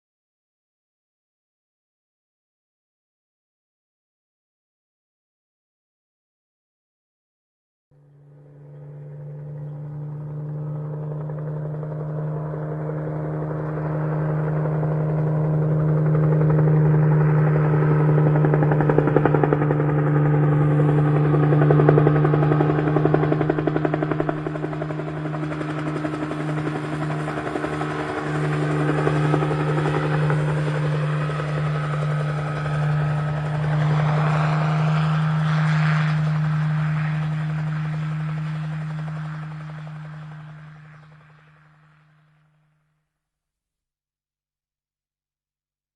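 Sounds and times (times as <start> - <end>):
helicopter rotor chop: 8.0 - 42.4.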